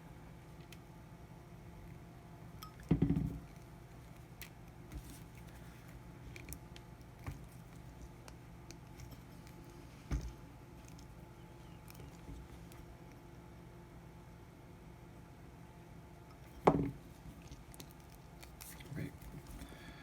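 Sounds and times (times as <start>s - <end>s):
knock and rustle: 2.9s - 3.5s, 16.6s - 17.0s.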